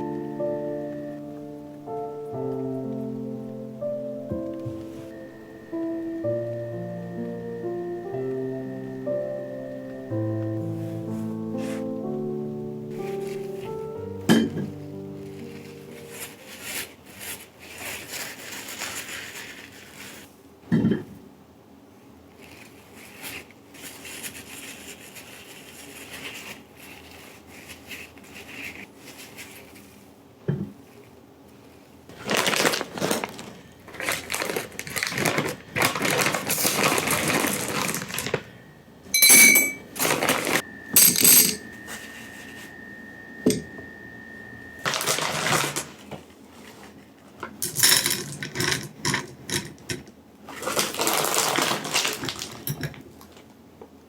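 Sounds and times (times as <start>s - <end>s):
rustling and crunching: 12.8s - 20.4s, 22.3s - 38.8s, 39.6s - 42.9s, 44.8s - 47.5s, 50.5s - 53.5s
dishes and utensils clattering: 20.7s - 21.2s, 39.2s - 41.7s
steady thin tone: 38.5s - 46.1s.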